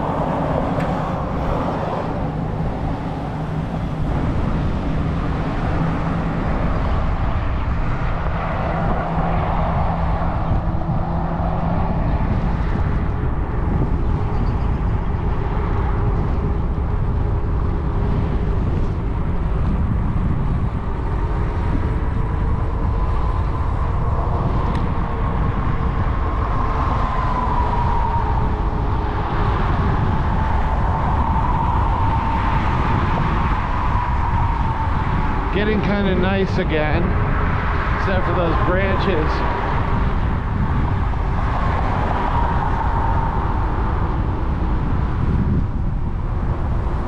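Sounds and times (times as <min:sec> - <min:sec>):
wind buffeting microphone: 0:00.0 - 0:47.0.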